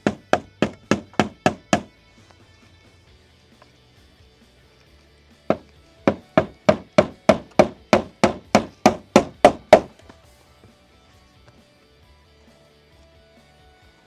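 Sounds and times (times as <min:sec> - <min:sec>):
hammer strikes: 0:00.0 - 0:01.9, 0:05.5 - 0:09.9.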